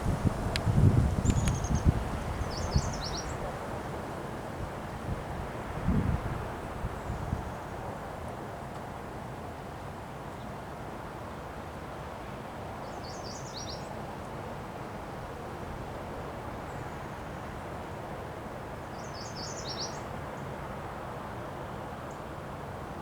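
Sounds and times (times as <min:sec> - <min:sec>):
wind blowing: 0:00.0 - 0:07.5.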